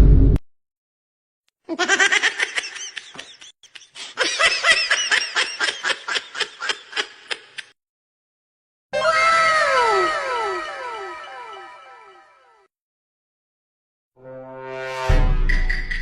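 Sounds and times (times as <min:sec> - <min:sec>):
person laughing: 0:01.7 - 0:07.7.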